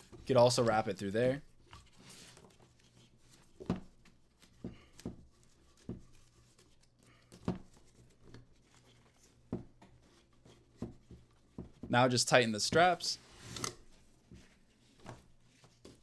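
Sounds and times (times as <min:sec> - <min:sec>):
rifle sling strap handling: 0:13.5 - 0:14.0.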